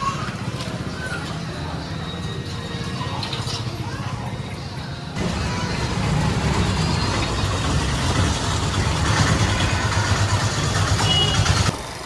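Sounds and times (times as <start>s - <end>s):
heavy diesel engine running: 5.2s - 11.7s.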